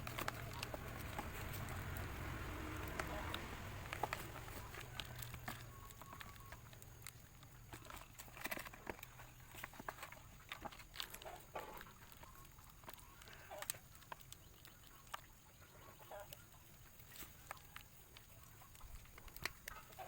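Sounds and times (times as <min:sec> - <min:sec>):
small clicks and taps: 0:17.0 - 0:20.0.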